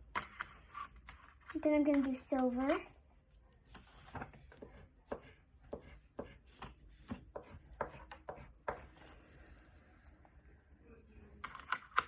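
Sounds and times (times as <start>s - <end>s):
pencil scratching on paper: 3.7s - 9.4s.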